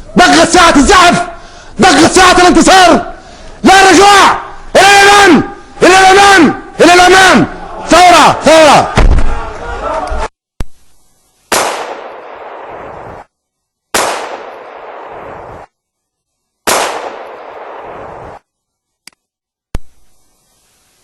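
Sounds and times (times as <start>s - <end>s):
loud gunshot-like blasts: 11.5s - 13.2s, 14.0s - 15.7s, 16.7s - 18.4s.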